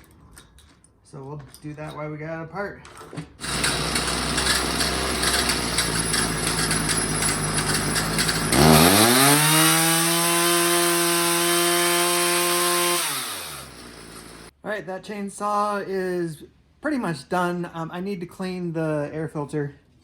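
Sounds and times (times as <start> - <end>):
chainsaw cutting and revving: 3.4 - 14.5.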